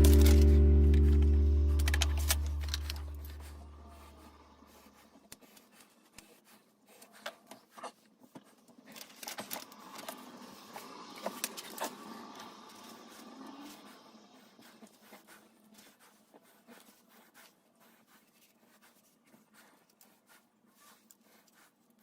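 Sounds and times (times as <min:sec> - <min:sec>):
objects clicking and scraping: 0:00.0 - 0:03.6, 0:08.8 - 0:10.2
background music: 0:00.0 - 0:03.8.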